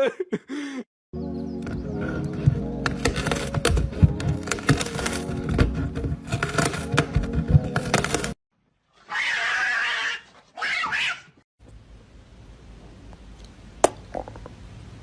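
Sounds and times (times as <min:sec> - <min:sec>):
cat crying out: 0:09.0 - 0:11.4.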